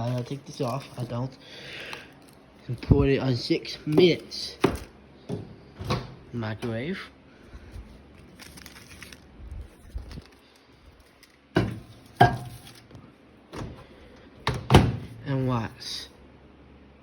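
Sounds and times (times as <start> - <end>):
packaging rustle: 0.0 - 2.9, 7.9 - 11.5.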